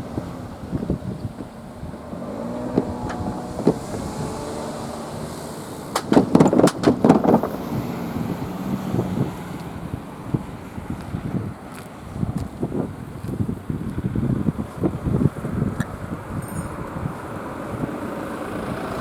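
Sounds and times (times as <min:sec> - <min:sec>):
diesel railcar engine running: 0:00.0 - 0:19.0
wind on microphone: 0:00.0 - 0:19.0
train wheels clacking over rails: 0:05.9 - 0:07.8.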